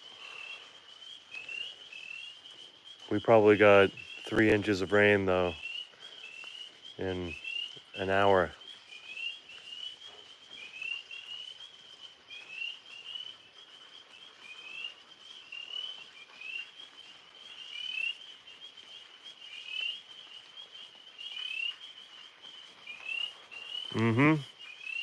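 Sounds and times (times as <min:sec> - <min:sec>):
small animals chirping chorus: 0:00.0 - 0:11.6.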